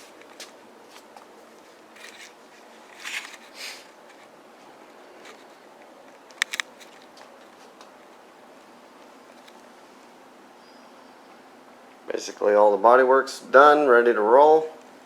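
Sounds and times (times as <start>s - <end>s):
soft rustles: 0.0s - 10.2s.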